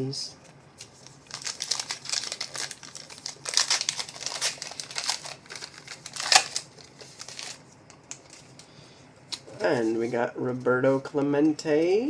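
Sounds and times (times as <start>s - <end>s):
cards and wrapper crinkling: 0.8s - 8.7s.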